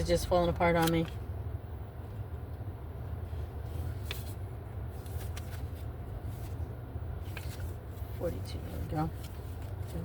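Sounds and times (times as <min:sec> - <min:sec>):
book being handled: 0:03.2 - 0:10.0.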